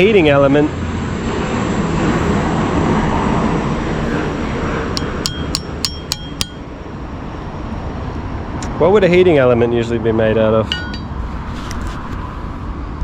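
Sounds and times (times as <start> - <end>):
steady rumbling background: 0.0 - 13.0
light metallic clinks: 10.7 - 11.1.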